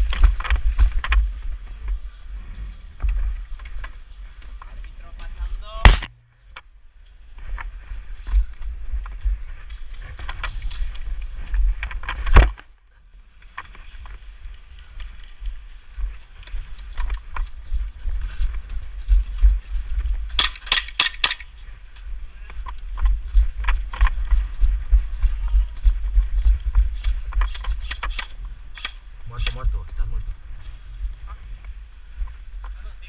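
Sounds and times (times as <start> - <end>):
footsteps: 0.0 - 33.0
sharp cracks: 5.8 - 6.3, 20.3 - 21.6, 27.4 - 29.6.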